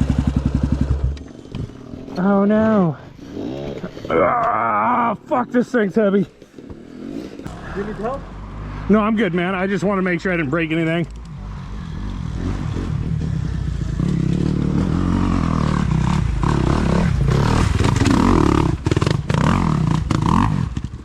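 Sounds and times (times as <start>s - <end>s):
dirt bike engine revving: 0.0s - 4.1s, 6.8s - 21.0s.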